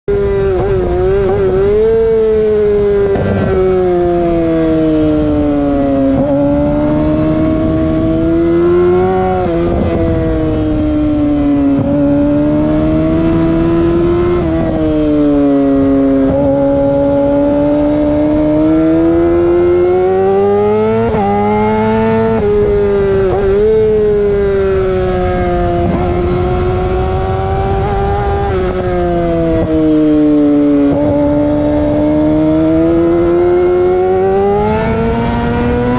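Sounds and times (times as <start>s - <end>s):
vehicle engine revving: 0.1s - 35.9s.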